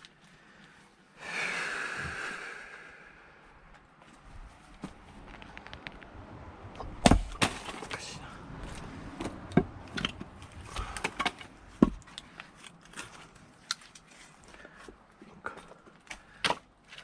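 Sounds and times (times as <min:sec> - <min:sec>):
axe splitting wood: 0:06.8 - 0:08.0, 0:09.2 - 0:12.1, 0:16.1 - 0:16.7
wooden knocks: 0:09.2 - 0:12.0.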